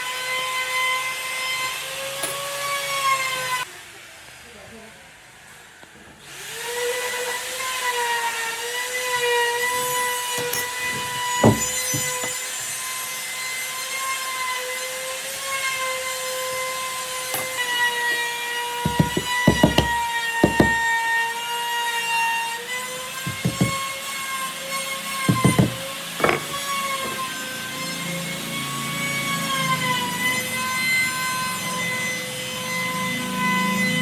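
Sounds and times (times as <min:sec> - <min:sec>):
power tool whining on wood: 0:06.2 - 0:34.0
sharp knocks: 0:10.4 - 0:12.4, 0:18.9 - 0:20.9, 0:23.3 - 0:24.0, 0:25.3 - 0:27.3.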